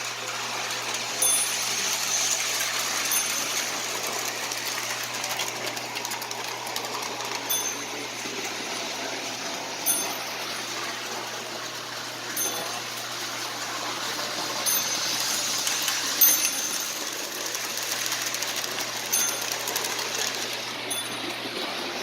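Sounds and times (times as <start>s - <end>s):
toy train motor whirring: 0.0s - 22.0s
toy train bell dinging: 0.9s - 8.5s, 9.8s - 11.0s, 12.3s - 13.2s, 14.1s - 22.0s.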